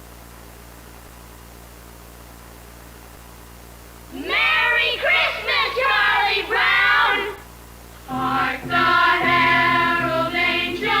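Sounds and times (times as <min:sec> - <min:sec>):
choir singing: 0:04.8 - 0:07.4, 0:08.1 - 0:11.0.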